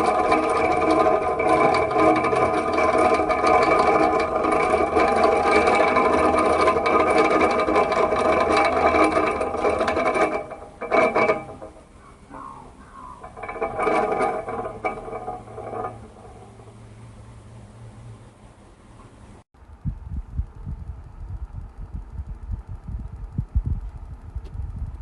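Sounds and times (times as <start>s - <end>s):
electric fan running: 0.0s - 25.0s.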